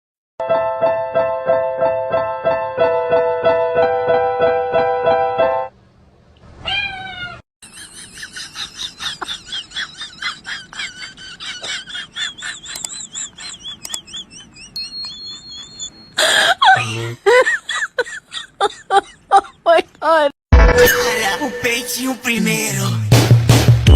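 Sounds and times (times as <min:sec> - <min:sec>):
keyboard music: 0:00.4 - 0:05.7, 0:20.5 - 0:23.9
cat meowing: 0:06.6 - 0:07.4
rapid high wavering chirps: 0:12.9 - 0:16.2.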